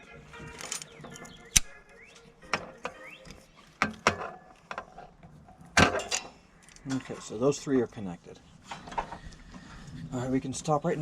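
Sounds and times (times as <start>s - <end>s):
metal tools clicking on wire connectors: 0.4s - 1.9s, 5.8s - 7.1s.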